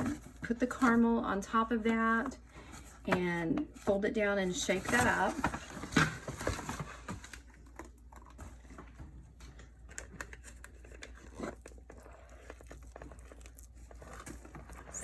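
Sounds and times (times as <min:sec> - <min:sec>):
paper bag rustling and crinkling: 0:03.8 - 0:15.0.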